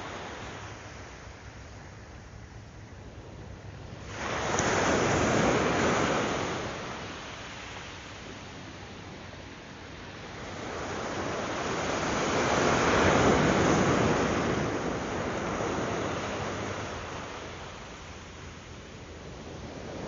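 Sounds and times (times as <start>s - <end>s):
surf breaking on beach: 4.0s - 8.0s.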